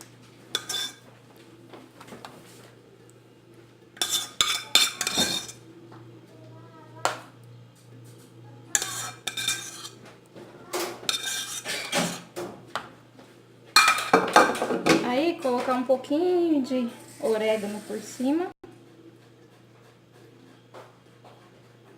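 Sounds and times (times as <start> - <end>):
spoon scraping a baking dish: 0.5 - 1.0, 4.0 - 5.6, 8.7 - 10.1, 10.9 - 12.4.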